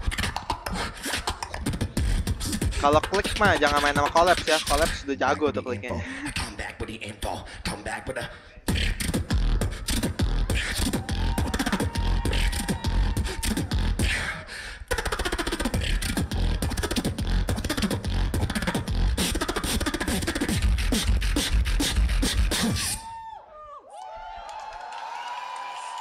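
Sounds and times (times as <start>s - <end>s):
beatboxing clicks and bass kicks: 0.0s - 5.1s, 6.0s - 23.0s
held vocal tone: 0.8s - 23.0s.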